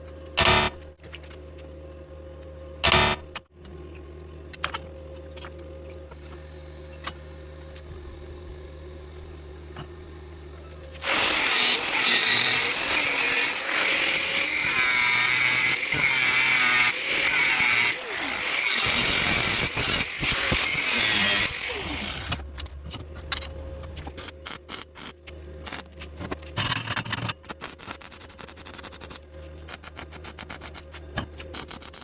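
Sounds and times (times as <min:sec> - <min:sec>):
welder humming: 0:02.8 - 0:22.5
welding arc crackling and hissing: 0:11.0 - 0:22.4.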